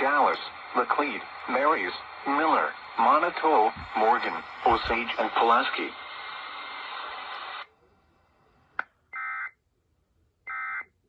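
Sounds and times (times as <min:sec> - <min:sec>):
radio hiss: 0:00.0 - 0:08.8.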